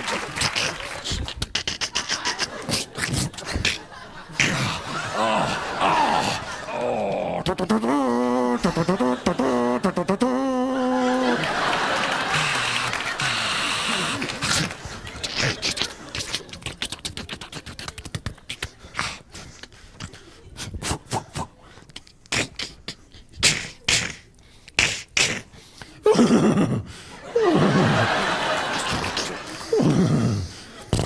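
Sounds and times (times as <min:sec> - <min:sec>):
mouth clicks and pops: 0:00.0 - 0:03.8, 0:06.7 - 0:10.6, 0:12.3 - 0:25.9
vocal sounds sliding down in pitch: 0:04.4 - 0:15.5.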